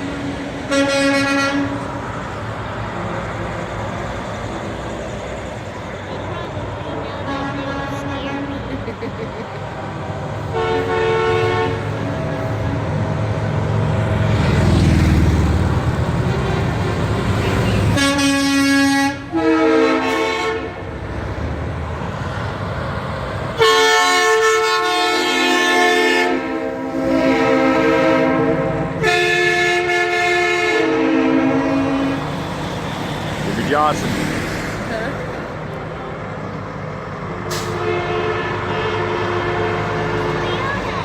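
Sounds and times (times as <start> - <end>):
truck air horns blasting: 0.0 - 2.2, 6.9 - 8.6, 10.3 - 12.8, 16.2 - 20.9, 23.5 - 34.0, 37.4 - 41.0
diesel truck engine rumbling: 0.0 - 41.0.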